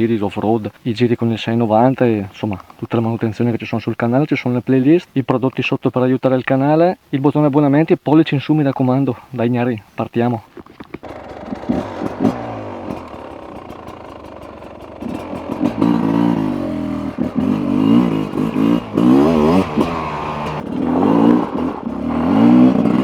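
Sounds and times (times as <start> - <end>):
motorcycle engine revving: 11.0 - 23.0.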